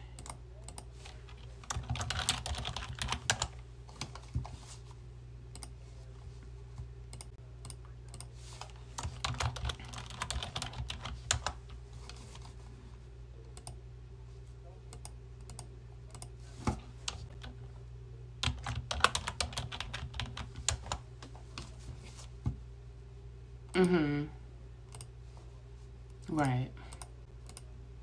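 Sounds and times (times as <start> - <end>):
steady low hum: 0.0 - 28.0
typing on computer keyboard: 1.4 - 4.2, 9.0 - 11.6, 18.4 - 21.0.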